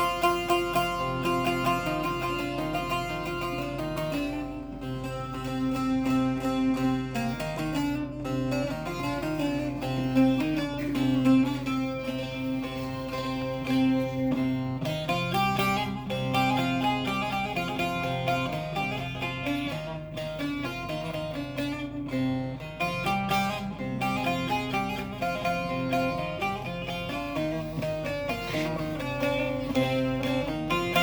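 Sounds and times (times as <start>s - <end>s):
long-necked lute melody: 0.0s - 31.0s.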